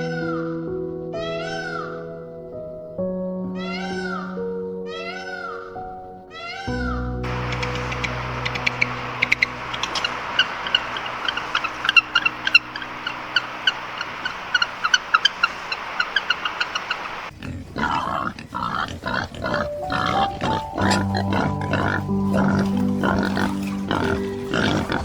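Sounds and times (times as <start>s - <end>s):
piano music: 0.0s - 17.2s, 19.4s - 25.0s
animal high squeaks: 6.4s - 17.3s
animal rough grunts: 17.3s - 25.0s.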